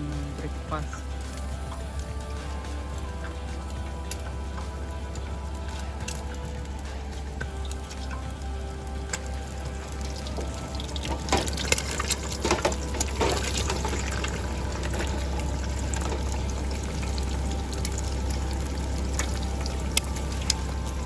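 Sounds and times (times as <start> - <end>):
rain falling: 0.0 - 21.0.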